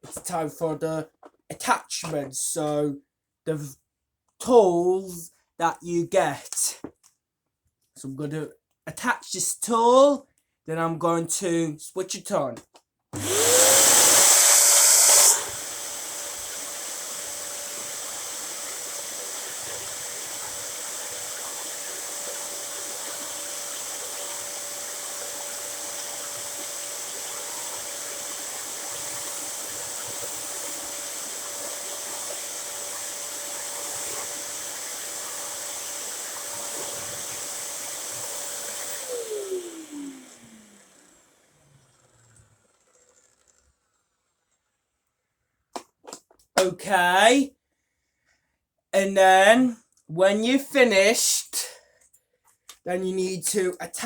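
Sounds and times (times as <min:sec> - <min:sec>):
vacuum cleaner running: 0:13.2 - 0:43.6.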